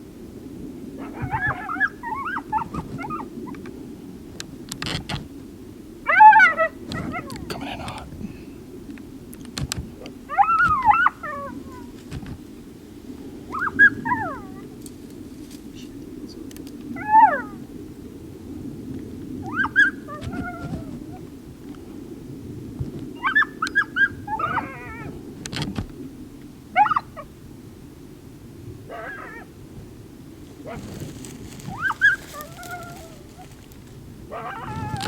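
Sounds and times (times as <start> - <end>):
coyotes barking and yipping: 1.0 - 3.8, 6.0 - 8.2, 9.9 - 12.0, 13.3 - 14.9, 15.7 - 17.8, 19.0 - 21.3, 23.1 - 25.3, 26.7 - 27.4, 28.8 - 29.6, 30.4 - 35.0.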